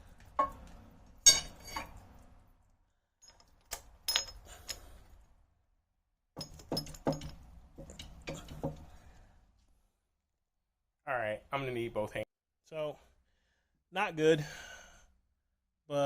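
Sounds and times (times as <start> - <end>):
metal parts clinking and knocking: 0.3 - 2.0, 3.2 - 5.2, 6.4 - 8.9.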